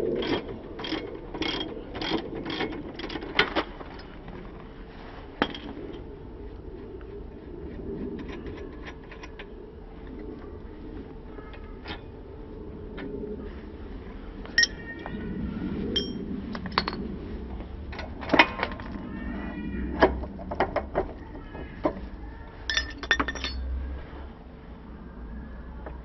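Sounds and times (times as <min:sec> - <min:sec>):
metal tools clinking: 0:14.6 - 0:14.8, 0:16.0 - 0:17.0, 0:22.7 - 0:23.7.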